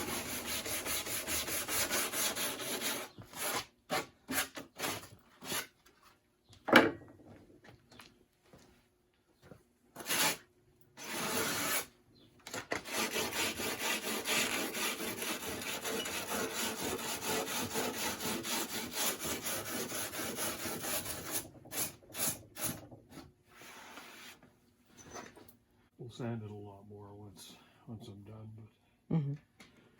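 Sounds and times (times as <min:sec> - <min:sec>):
sandpaper scrubbing wood: 0:00.0 - 0:03.6, 0:11.0 - 0:11.9, 0:12.8 - 0:22.8.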